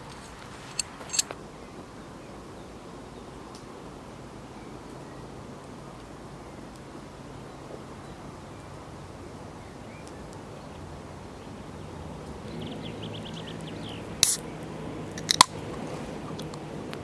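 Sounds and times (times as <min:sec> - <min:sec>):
quick clicks: 0:00.0 - 0:01.4, 0:15.1 - 0:15.6
sharp crunch: 0:14.2 - 0:14.4, 0:15.2 - 0:15.6.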